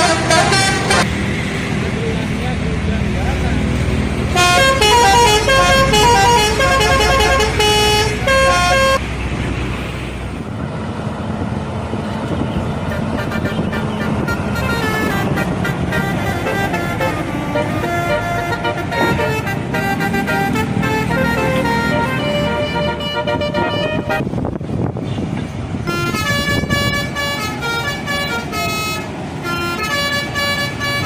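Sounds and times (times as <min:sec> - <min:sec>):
multi-tone air horn melody: 0:00.0 - 0:01.1, 0:04.3 - 0:09.0, 0:12.9 - 0:24.4, 0:25.8 - 0:31.0
low engine rumble: 0:00.0 - 0:31.0.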